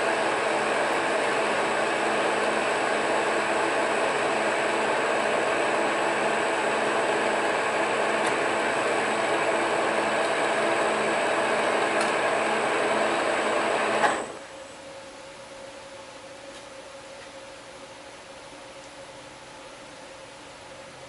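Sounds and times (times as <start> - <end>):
metal lathe humming: 0.0 - 14.4
faint steady hum: 0.0 - 21.0.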